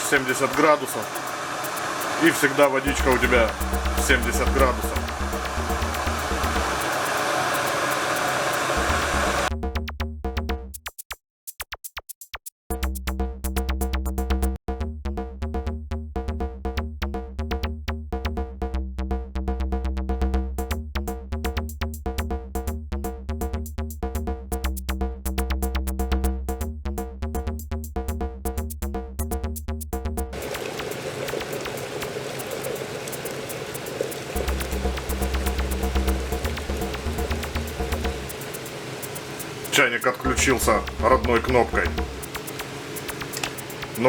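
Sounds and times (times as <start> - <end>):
electric kettle hiss: 0.0 - 9.5, 30.4 - 44.0
electronic music with beat: 0.0 - 10.0, 30.3 - 44.0.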